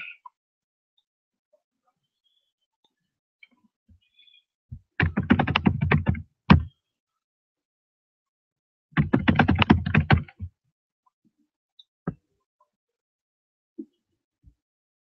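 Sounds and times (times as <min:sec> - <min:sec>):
typing on computer keyboard: 0:05.0 - 0:06.6, 0:09.0 - 0:10.5.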